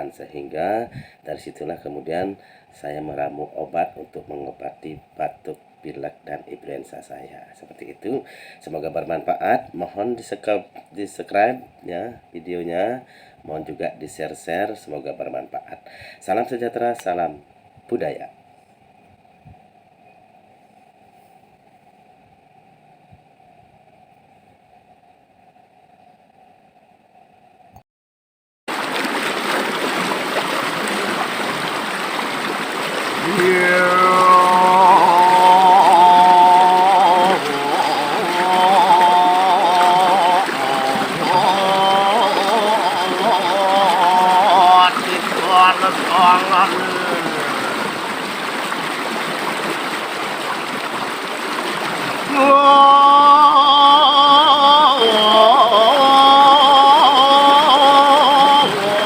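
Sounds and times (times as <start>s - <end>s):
river stream flowing: 28.7s - 59.0s
person singing long held notes: 33.2s - 48.1s, 52.3s - 59.0s.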